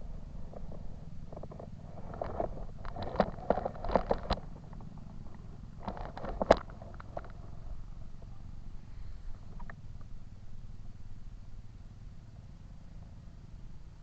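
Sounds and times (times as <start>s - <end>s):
steady low rumble: 0.0s - 14.0s
close clicking and rustling: 0.5s - 7.6s, 9.3s - 10.1s.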